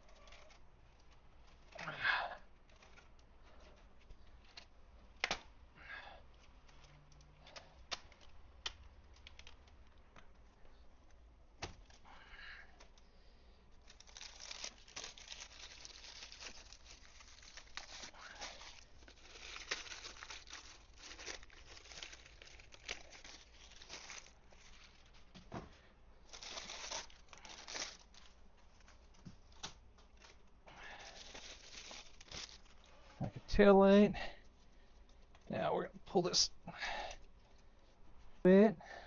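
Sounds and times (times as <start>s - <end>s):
packaging crinkling and tearing: 0.0s - 0.6s, 13.8s - 25.3s, 26.2s - 32.9s.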